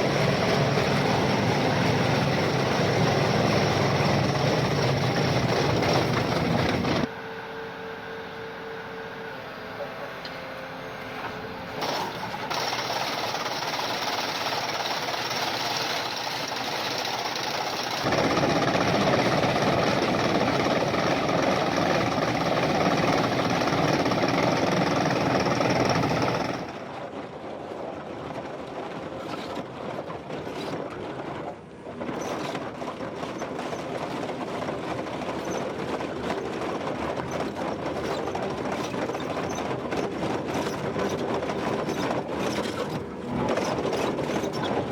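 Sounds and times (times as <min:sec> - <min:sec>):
excavator engine running: 0:00.0 - 0:10.9, 0:11.7 - 0:26.9
chain cutter working in stone: 0:11.8 - 0:26.8.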